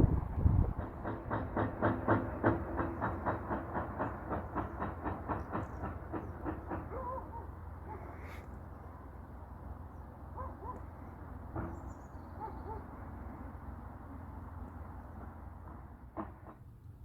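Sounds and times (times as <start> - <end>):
train wheels clicking over rail joints: 0.0 - 7.8, 15.2 - 17.0.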